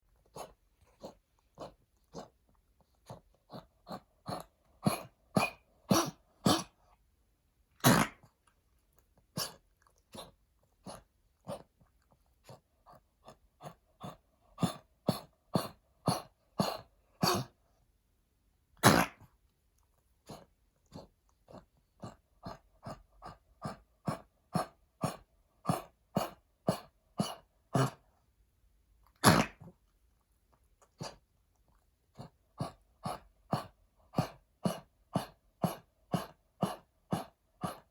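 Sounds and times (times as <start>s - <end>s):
dog coughing: 4.3s - 6.8s, 7.8s - 8.2s, 14.6s - 17.5s, 18.8s - 19.3s, 24.6s - 28.0s, 29.2s - 29.7s.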